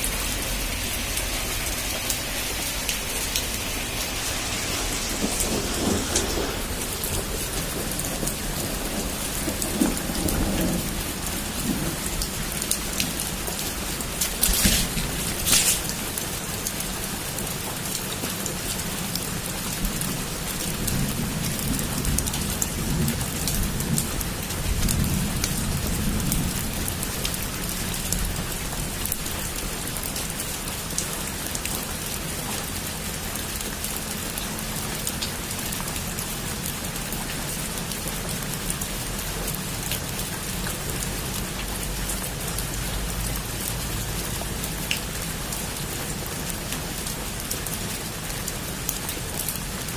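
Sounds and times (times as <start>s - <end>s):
thunder rumbling: 0.0s - 16.9s
heavy rain on a rooftop: 0.0s - 49.9s.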